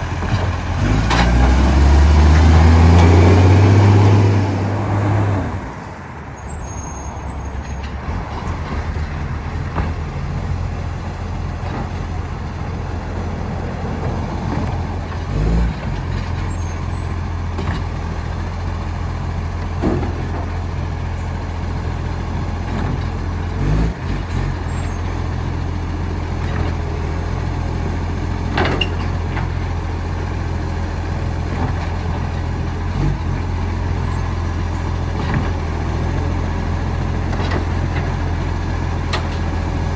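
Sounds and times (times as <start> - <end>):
knocks and clunks: 0.0 - 1.6, 7.2 - 10.8, 11.4 - 12.7, 13.8 - 18.3, 19.6 - 21.3, 22.4 - 25.5, 28.4 - 29.8, 34.2 - 36.4, 37.0 - 39.7
diesel truck engine running: 0.0 - 39.9.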